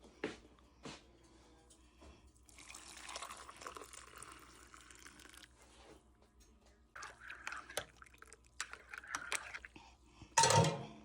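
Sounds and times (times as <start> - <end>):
water running: 6.9 - 9.7.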